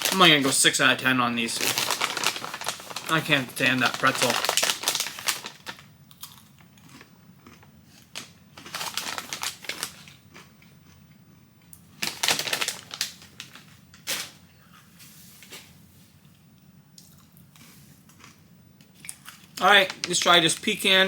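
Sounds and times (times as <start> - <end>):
snack packaging crinkling: 0.0 - 11.0, 12.0 - 14.4, 19.0 - 20.8
crunchy eating: 6.1 - 11.4, 17.0 - 18.4.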